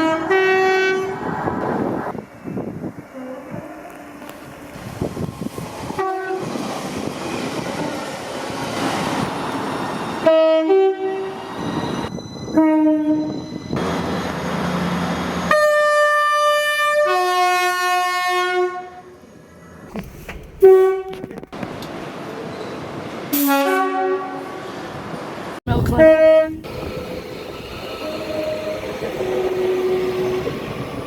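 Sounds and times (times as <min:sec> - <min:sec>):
train horn blasts: 0:00.0 - 0:01.2, 0:06.0 - 0:06.5, 0:10.2 - 0:11.4, 0:12.5 - 0:13.5, 0:15.5 - 0:19.1, 0:23.3 - 0:24.7, 0:25.8 - 0:26.8, 0:27.9 - 0:30.8
trains running: 0:00.0 - 0:17.0, 0:24.6 - 0:31.0.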